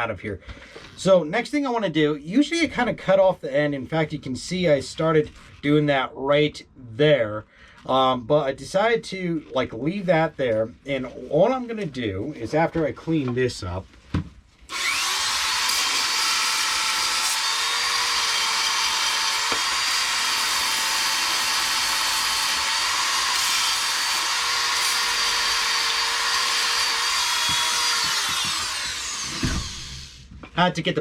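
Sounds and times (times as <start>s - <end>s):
wood lathe running: 14.7s - 30.2s.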